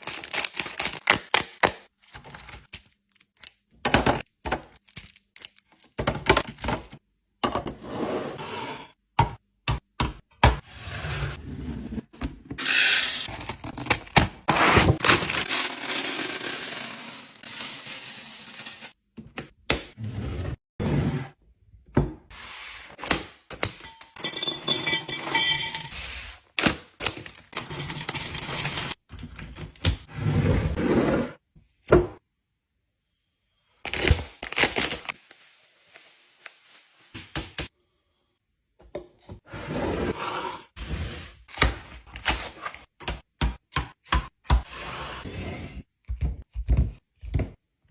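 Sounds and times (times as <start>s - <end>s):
bottles and cans placed on shelves: 5.9s - 10.6s, 31.6s - 32.2s, 38.7s - 40.2s.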